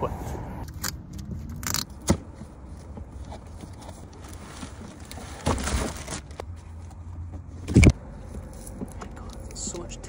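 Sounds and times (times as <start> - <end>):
packaging rustling: 4.1 - 6.4.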